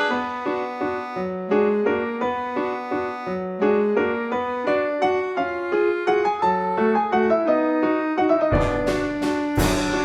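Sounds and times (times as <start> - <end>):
piano-like keyboard notes: 0.0 - 10.0
heavy low hit: 8.5 - 10.0.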